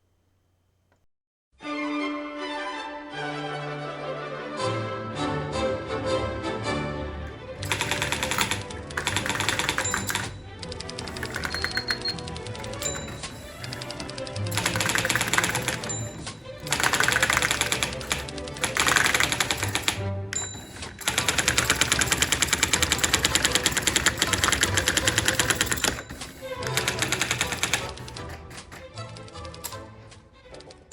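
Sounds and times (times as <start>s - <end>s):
background music: 1.6s - 30.9s
typewriter printing: 7.3s - 29.8s.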